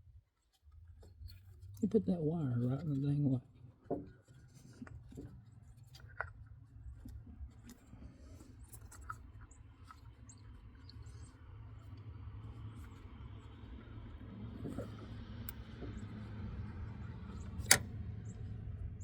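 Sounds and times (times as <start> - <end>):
low steady hum: 0.0 - 19.0
small clicks and handling noises: 2.6 - 18.6.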